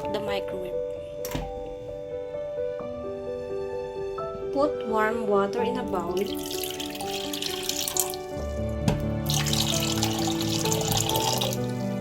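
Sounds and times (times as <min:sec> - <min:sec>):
background music: 0:00.0 - 0:12.0
water running into a bowl: 0:06.0 - 0:12.0.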